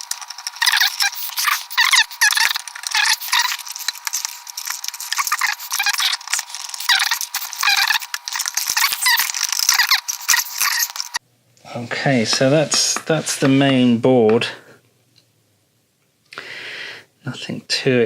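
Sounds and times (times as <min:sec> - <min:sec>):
short chirpy squeaks: 0:00.6 - 0:11.2.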